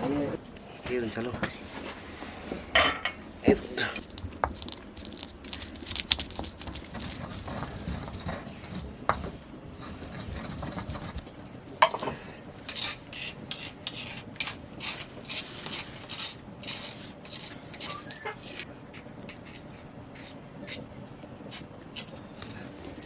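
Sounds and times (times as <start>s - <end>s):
metal cookware clanking: 2.7s - 3.2s, 11.8s - 14.6s
scraping in a metal pot: 4.0s - 23.0s.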